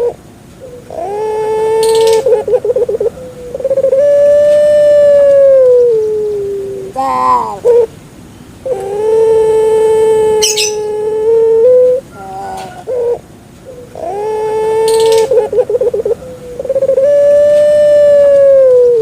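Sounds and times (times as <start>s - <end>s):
dove calling: 0.0s - 19.0s.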